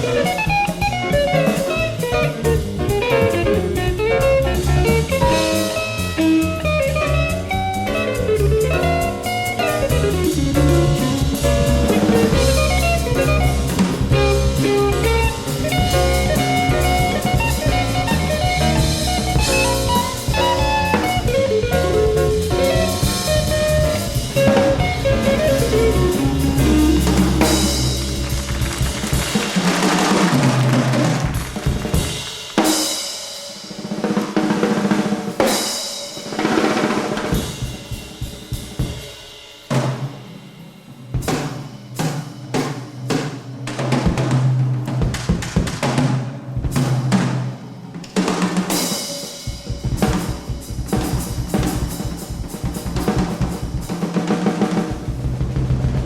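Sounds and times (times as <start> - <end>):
double bass: 0.0 - 29.4, 55.0 - 56.0
electric guitar: 0.0 - 33.0
drum kit playing: 0.0 - 56.0.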